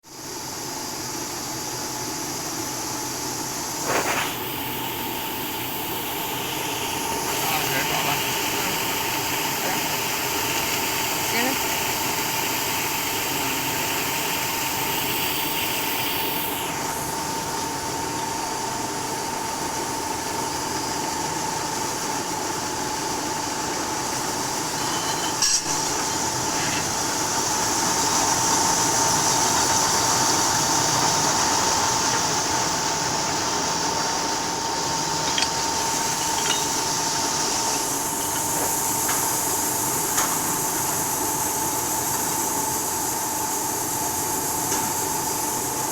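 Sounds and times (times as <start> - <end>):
machine hum with whine: 0.1 - 45.9
hissing spray: 3.6 - 17.7.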